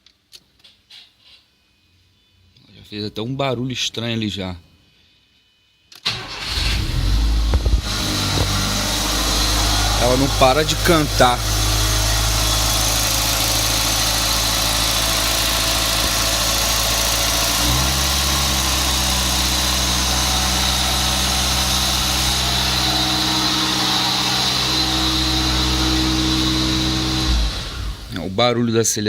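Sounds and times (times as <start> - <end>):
car engine idling: 6.1 - 28.3.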